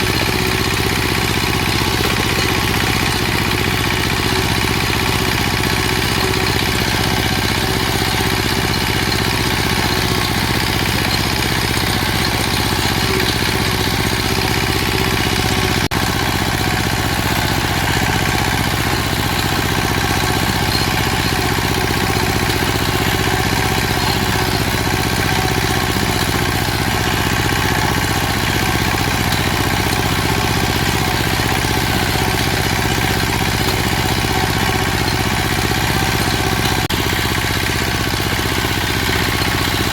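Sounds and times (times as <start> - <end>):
machinery droning: 0.0 - 39.9.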